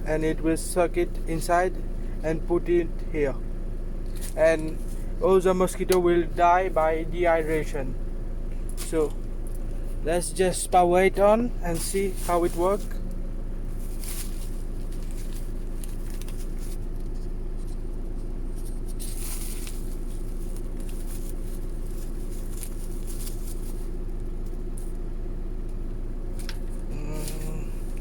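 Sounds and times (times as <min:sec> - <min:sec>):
low electrical hum: 0:00.0 - 0:28.0
handling clicks and rustles: 0:11.1 - 0:28.0.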